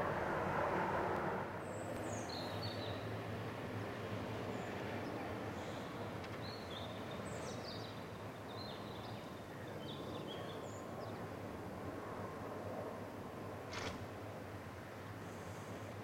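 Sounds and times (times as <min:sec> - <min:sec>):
outdoor rushing noise: 0:00.0 - 0:02.1.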